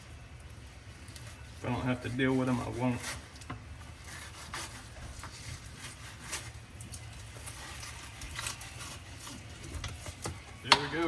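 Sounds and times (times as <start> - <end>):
knife scraping through bone: 7.4 - 9.8.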